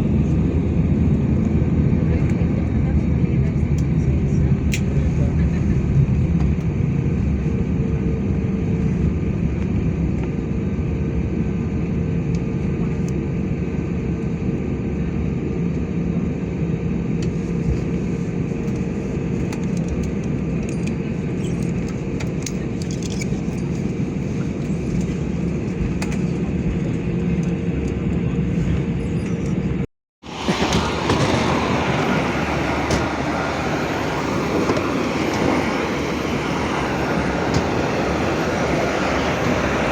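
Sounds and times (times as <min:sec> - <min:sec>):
airplane cabin engine drone: 0:00.0 - 0:39.9
low hum: 0:28.8 - 0:39.9.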